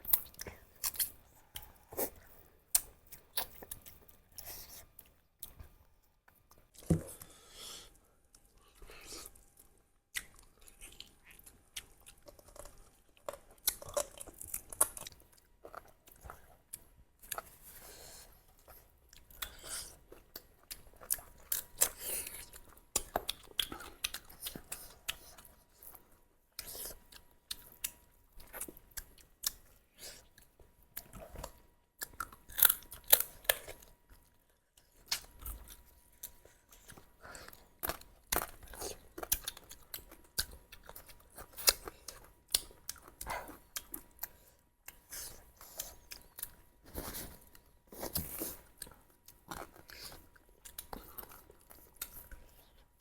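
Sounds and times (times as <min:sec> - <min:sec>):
chewing and crunching: 0:00.0 - 0:05.7, 0:08.4 - 0:53.0.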